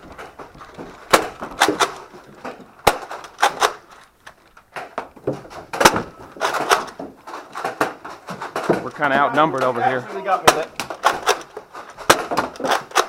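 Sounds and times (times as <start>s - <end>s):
foam balls smacking walls: 0.0s - 3.9s, 4.6s - 13.0s
toy blaster shots cracking: 10.4s - 13.0s.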